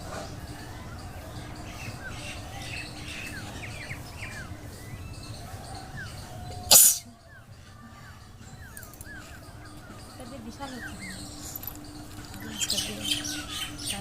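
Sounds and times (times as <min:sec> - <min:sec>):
small birds chirping: 0:00.0 - 0:14.0
woman sneezing: 0:06.7 - 0:07.0.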